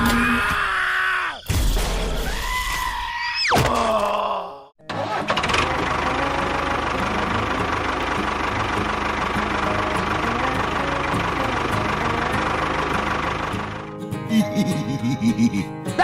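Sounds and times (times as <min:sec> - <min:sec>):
small engine running: 0:04.9 - 0:14.0.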